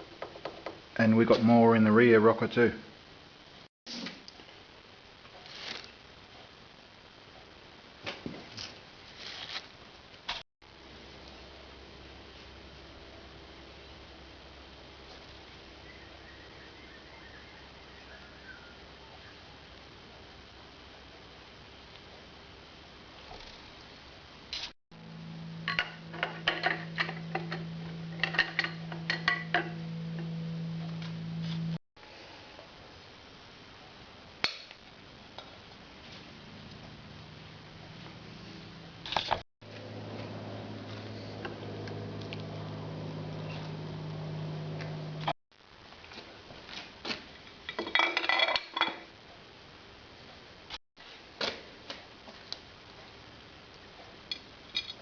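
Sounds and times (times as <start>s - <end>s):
steady low hum: 24.9s - 33.2s, 34.9s - 45.4s
metal tools clinking and rattling: 25.7s - 27.6s.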